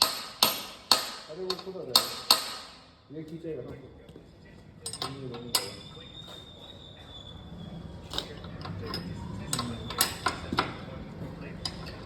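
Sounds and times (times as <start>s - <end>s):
metal tools clinking and knocking: 4.8s - 5.8s, 8.1s - 10.8s, 11.6s - 12.0s.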